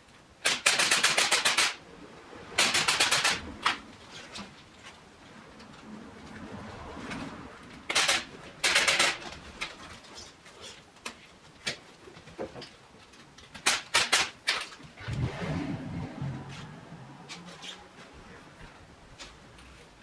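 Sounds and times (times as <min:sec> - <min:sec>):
low murmur: 0:15.0 - 0:19.6.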